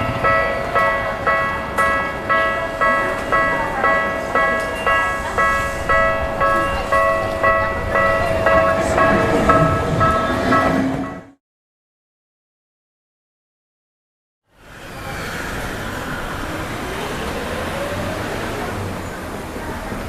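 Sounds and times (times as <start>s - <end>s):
level crossing alarm bell ringing: 0.0s - 11.4s.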